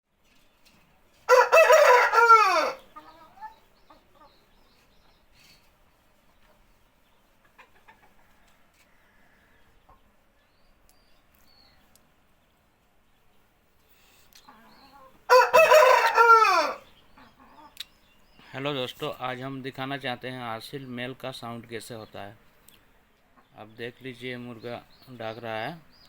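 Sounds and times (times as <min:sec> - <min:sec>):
rooster crowing: 0:01.3 - 0:02.9, 0:15.3 - 0:16.8.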